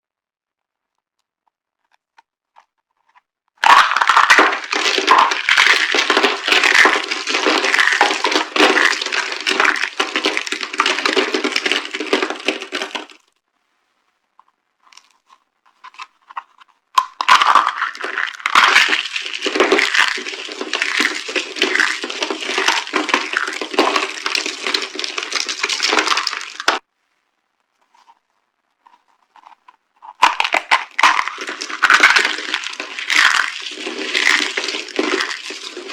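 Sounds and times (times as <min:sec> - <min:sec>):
soap boxes crunching: 0:03.6 - 0:13.2, 0:15.8 - 0:26.8, 0:29.4 - 0:35.9.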